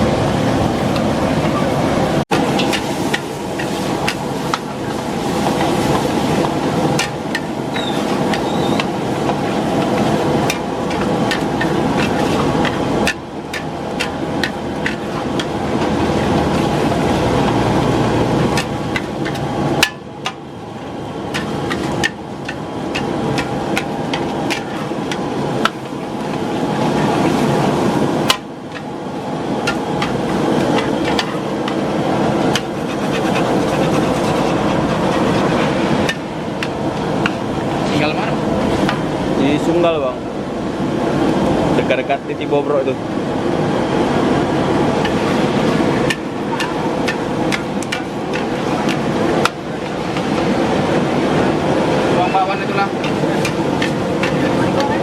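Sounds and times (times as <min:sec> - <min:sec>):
stove and frying rushing noise: 0:00.0 - 0:55.0
metal spatula clattering on wok: 0:53.0 - 0:55.0.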